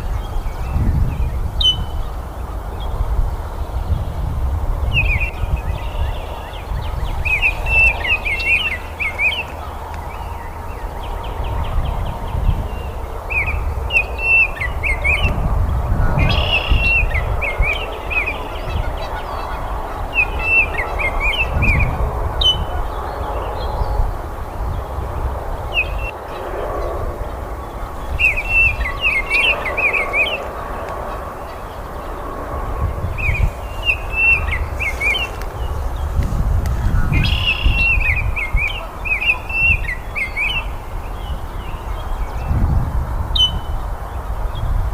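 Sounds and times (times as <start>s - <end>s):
bird singing whistled notes: 0.0s - 2.1s, 16.2s - 18.8s, 28.0s - 30.4s, 37.0s - 42.5s, 43.4s - 43.8s.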